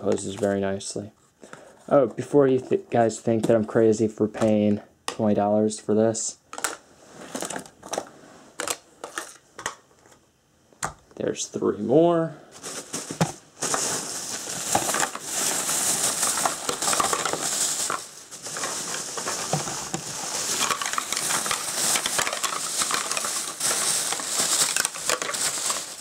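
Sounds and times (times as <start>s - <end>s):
plastic packaging crinkling: 12.5s - 26.0s
plastic clicks and clatter: 24.0s - 25.7s.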